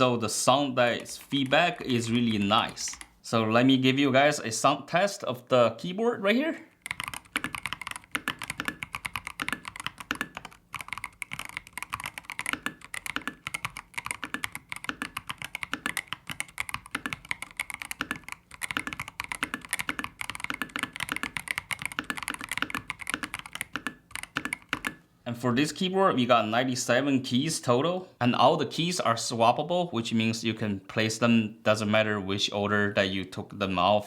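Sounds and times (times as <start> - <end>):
fast typing on mechanical keyboard: 6.8 - 25.0.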